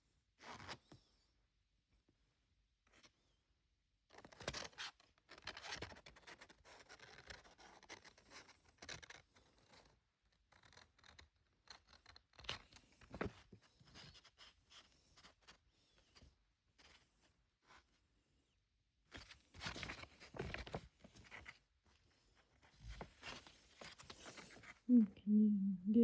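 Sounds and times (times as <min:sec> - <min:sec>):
paper rustling and scraping: 0:19.1 - 0:21.6, 0:22.3 - 0:24.8.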